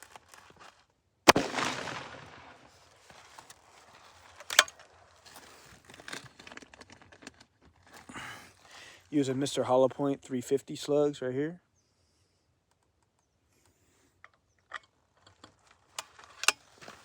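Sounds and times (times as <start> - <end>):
air rifle shot with echo: 1.3 - 2.8
sharp crack: 1.3 - 3.6
handling noise: 1.3 - 8.1.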